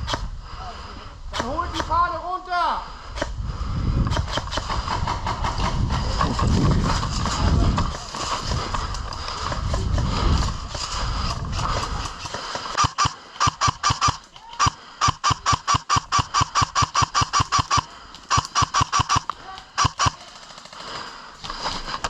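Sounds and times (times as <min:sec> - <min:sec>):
airsoft gun firing rapid bursts: 0:10.8 - 0:21.1.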